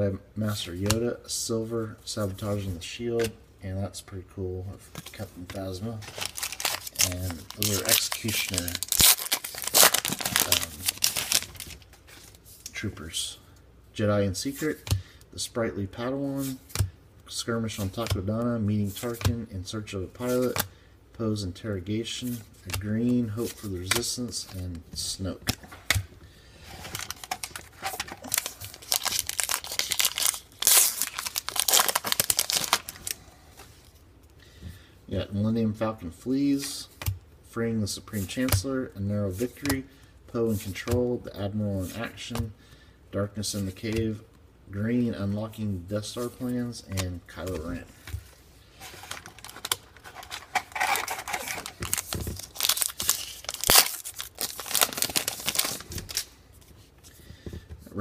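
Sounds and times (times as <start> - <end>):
wrapper crinkling and tearing: 6.0 - 11.9, 26.8 - 33.2, 48.8 - 56.3.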